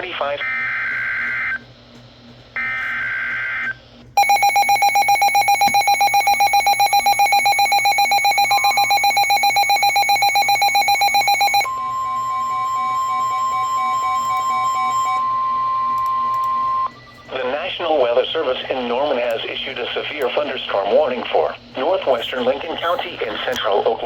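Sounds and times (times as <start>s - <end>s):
steady alert tone: 4.2s - 11.7s
rapidly pulsing alarm beep: 4.2s - 15.8s.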